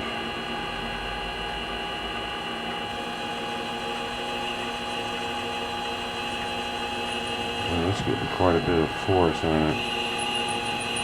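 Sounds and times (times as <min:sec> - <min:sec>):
machine tool humming: 0:02.8 - 0:11.0
thin whining tones: 0:03.0 - 0:11.0.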